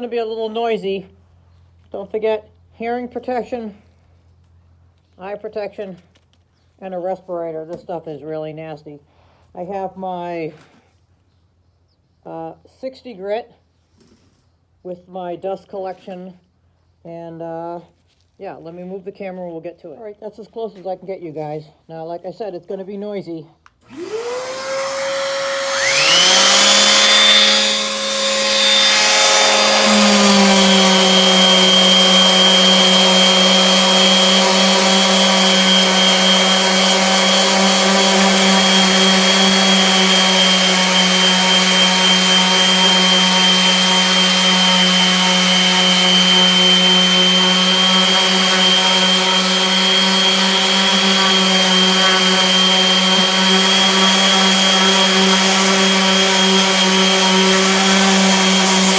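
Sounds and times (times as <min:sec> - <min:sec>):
dust vacuum running: 0:23.9 - 0:58.9
electric sander whine: 0:23.9 - 0:58.9.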